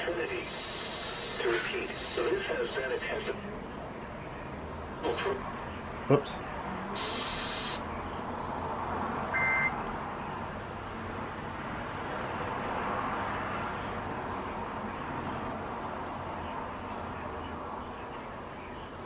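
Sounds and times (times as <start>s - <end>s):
radio static hiss: 0.0s - 3.6s, 5.0s - 6.3s, 6.9s - 7.9s.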